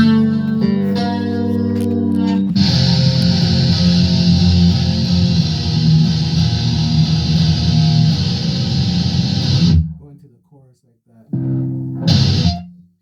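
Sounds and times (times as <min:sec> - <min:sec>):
distorted electric guitar chords: 0:00.0 - 0:10.0, 0:11.4 - 0:12.9
bass: 0:00.0 - 0:10.2, 0:11.3 - 0:12.7.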